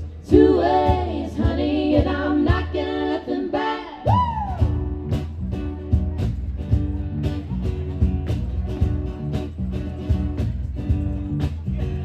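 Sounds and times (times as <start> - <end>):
country pop instrumental music: 4.1 - 12.0.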